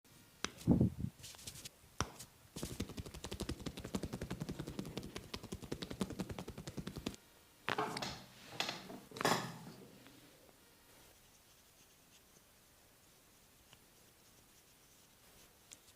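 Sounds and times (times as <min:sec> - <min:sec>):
hands brushing rubs: 0:00.5 - 0:07.2
rapid hand strikes cracking: 0:02.0 - 0:07.2.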